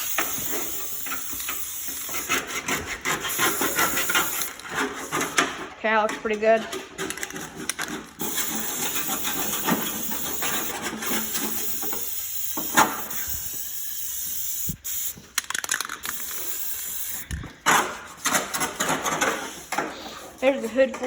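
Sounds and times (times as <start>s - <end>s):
spray paint can hissing: 0.0s - 4.6s, 8.2s - 17.4s.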